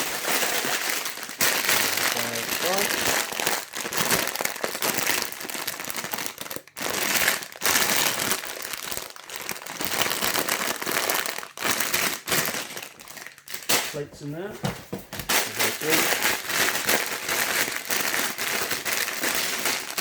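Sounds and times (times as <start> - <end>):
plastic bags crinkling: 0.0 - 20.0.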